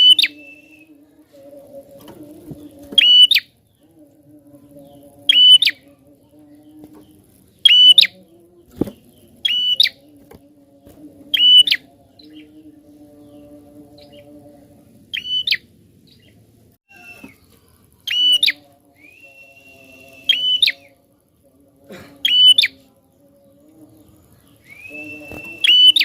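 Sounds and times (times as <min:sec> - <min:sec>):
bird shrill call: 0:00.0 - 0:00.8, 0:03.0 - 0:03.5, 0:16.9 - 0:17.4, 0:18.1 - 0:19.4
faint low hum: 0:00.0 - 0:26.0.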